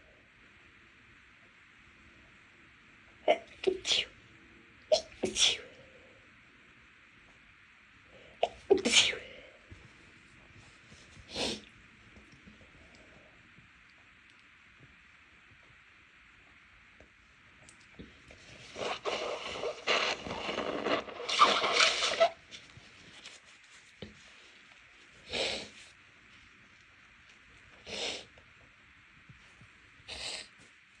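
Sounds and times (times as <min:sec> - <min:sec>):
person stifling sneezes: 0:04.9 - 0:05.7, 0:08.4 - 0:09.3.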